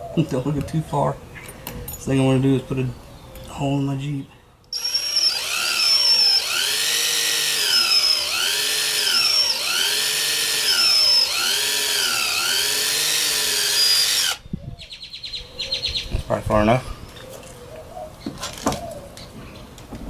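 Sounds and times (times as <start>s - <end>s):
electric drill motor whine: 4.8s - 14.4s.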